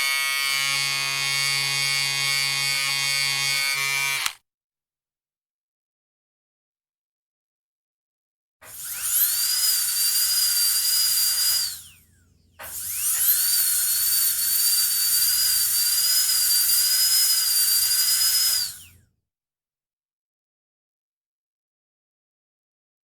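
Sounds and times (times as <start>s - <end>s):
dentist's drill whining: 0.0s - 4.4s, 8.6s - 19.1s.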